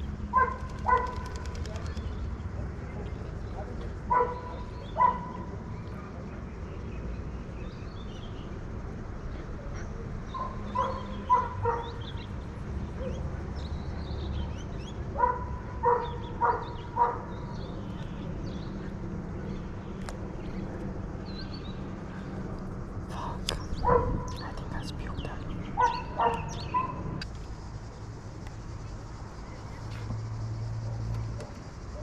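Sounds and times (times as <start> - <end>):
dog barking: 0.3 - 1.5, 4.1 - 5.5, 10.3 - 12.0, 15.2 - 17.3, 23.8 - 24.4, 25.8 - 27.1
small birds chirping: 9.2 - 32.0.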